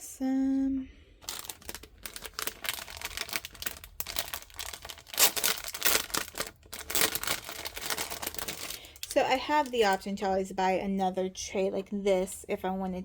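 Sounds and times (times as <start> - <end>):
plastic packaging crinkling: 1.2 - 10.1.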